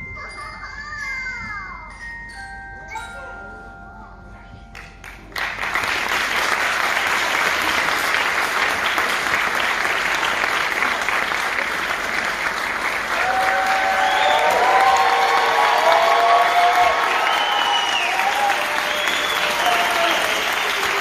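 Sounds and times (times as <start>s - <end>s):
audience clapping: 4.8s - 21.0s.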